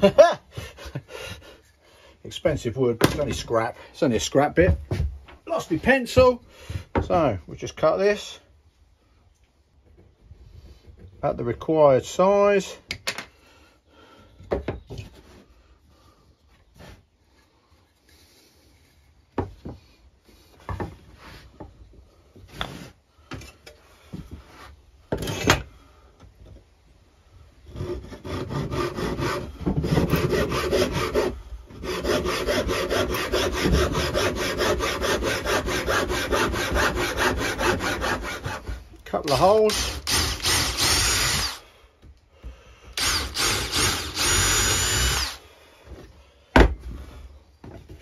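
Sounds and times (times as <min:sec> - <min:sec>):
handsaw cutting wood: 0:27.7 - 0:41.6, 0:43.0 - 0:45.4.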